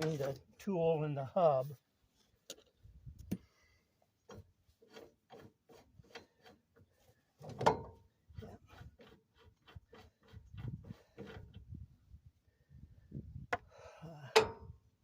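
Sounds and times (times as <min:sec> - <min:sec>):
rasping metal on metal strokes: 0:04.3 - 0:07.2, 0:08.3 - 0:11.6.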